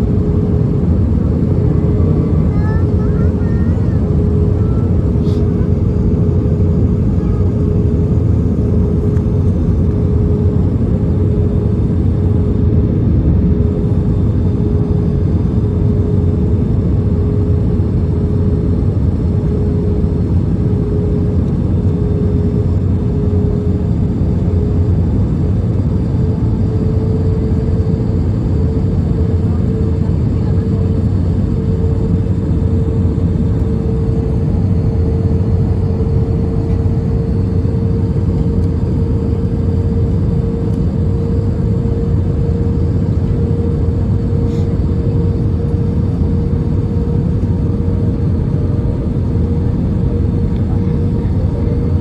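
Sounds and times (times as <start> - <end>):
steady cabin hum: 0.0 - 13.0
aircraft engine and airflow rumble: 0.0 - 52.0.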